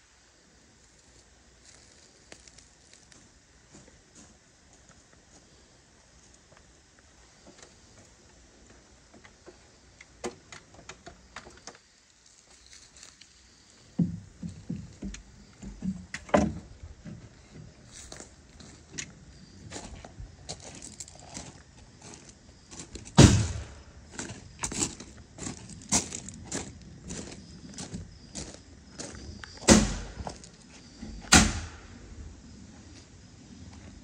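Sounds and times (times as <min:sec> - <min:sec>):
knocks of wood construction work: 0:10.2 - 0:11.8, 0:13.9 - 0:17.7, 0:29.6 - 0:30.4
sharp bangs: 0:23.2 - 0:23.9, 0:29.6 - 0:30.4, 0:31.3 - 0:32.0.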